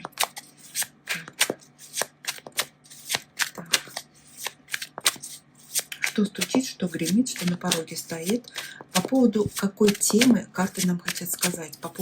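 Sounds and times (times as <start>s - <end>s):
cards being shuffled: 0.0s - 12.0s.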